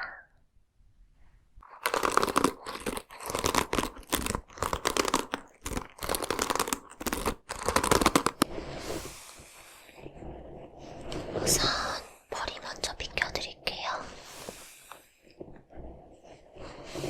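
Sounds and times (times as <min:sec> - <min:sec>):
crinkling and crunching material: 0:01.6 - 0:12.9.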